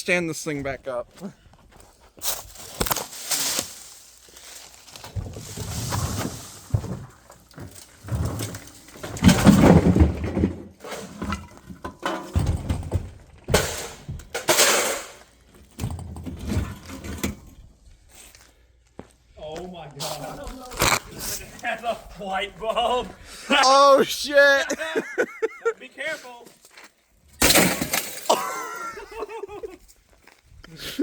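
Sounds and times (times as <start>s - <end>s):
refrigerator banging and scraping: 4.9s - 17.6s.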